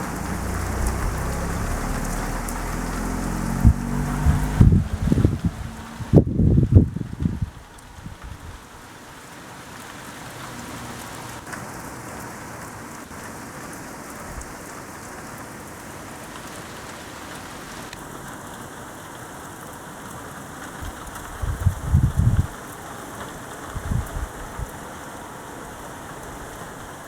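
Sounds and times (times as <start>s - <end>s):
rain falling: 0.0s - 27.0s.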